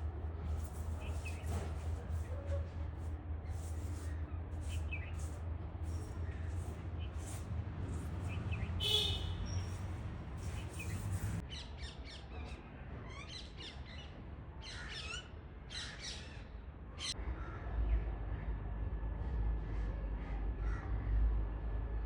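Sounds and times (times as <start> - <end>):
low rumble: 0.0 - 11.4
birds squawking chirps: 3.5 - 11.4.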